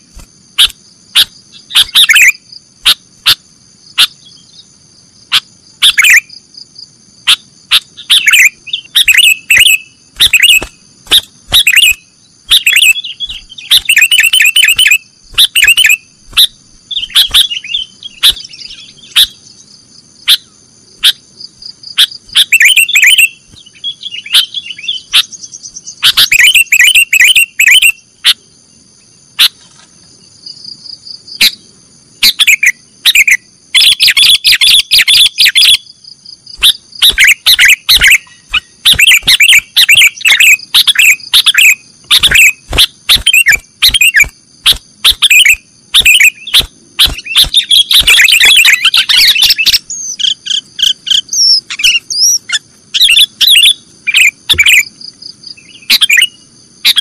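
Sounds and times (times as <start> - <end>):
bulbul chattering song: 0.0 - 28.5, 30.7 - 57.0
steady high-pitched whine: 0.0 - 57.0.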